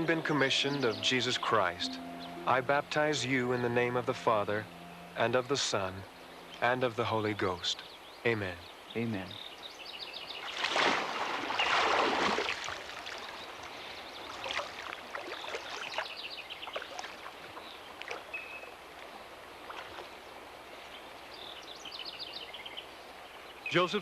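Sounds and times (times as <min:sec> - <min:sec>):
birds chirping: 0:00.0 - 0:24.0
river water splashing: 0:10.3 - 0:21.4
water sloshing and lapping: 0:10.4 - 0:20.3.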